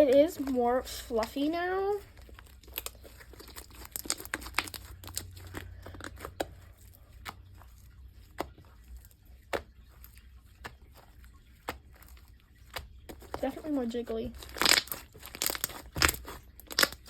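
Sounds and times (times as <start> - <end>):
slime popping and crackling: 0.0 - 17.0.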